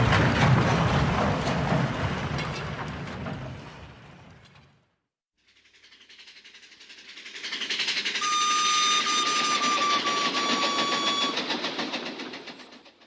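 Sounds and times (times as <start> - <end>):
roller coaster train clattering: 0.0 - 4.8, 7.0 - 13.0
steady high tone: 8.2 - 11.6.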